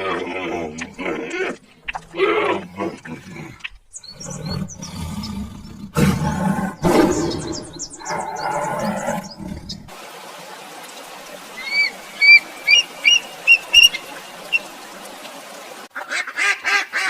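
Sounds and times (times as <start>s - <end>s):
big cat roaring and growling: 0.0s - 10.0s.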